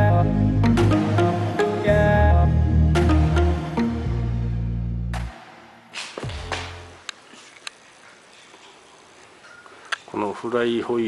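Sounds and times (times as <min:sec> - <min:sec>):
background music with bass: 0:00.0 - 0:05.5.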